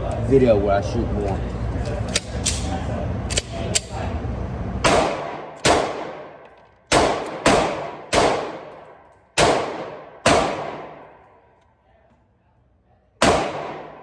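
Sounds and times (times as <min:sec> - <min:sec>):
pistol shots with echo: 0:04.8 - 0:11.2, 0:13.2 - 0:14.0.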